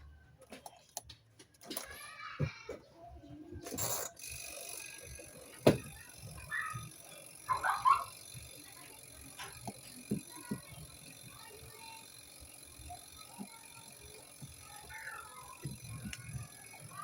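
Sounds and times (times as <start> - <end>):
plastic parts knocking and clicking: 0.4 - 2.8, 5.4 - 6.8, 9.3 - 11.2, 14.4 - 17.0.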